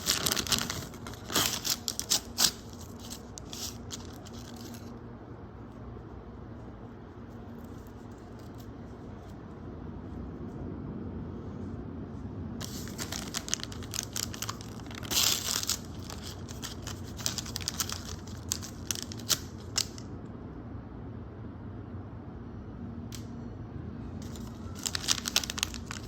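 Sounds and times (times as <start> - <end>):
packaging tearing: 0.0 - 4.9, 12.6 - 20.1, 24.2 - 26.0
packaging crinkling and rustling: 0.0 - 5.0, 12.6 - 20.1, 24.2 - 26.0.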